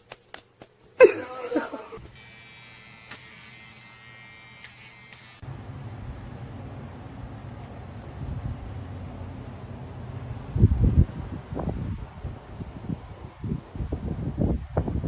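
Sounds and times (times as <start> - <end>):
electric motor buzzing: 2.0 - 5.5
low rumbling noise: 8.2 - 15.0.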